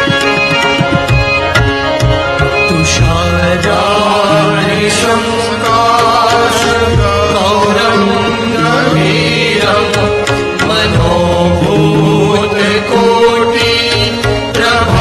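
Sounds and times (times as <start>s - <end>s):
percussion beat: 0.0s - 3.8s
melodic instruments: 0.0s - 15.0s.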